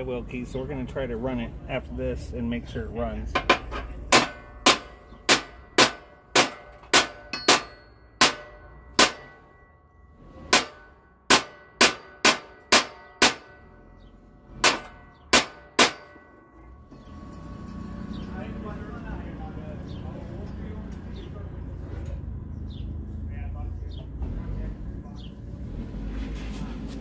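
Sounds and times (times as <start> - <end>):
hammer clanging on steel deck: 3.3 - 9.8, 10.4 - 13.9, 14.6 - 17.2.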